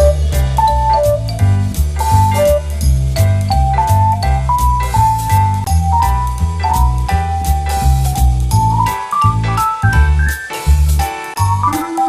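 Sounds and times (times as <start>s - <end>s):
upbeat instrumental music: 0.0s - 12.0s.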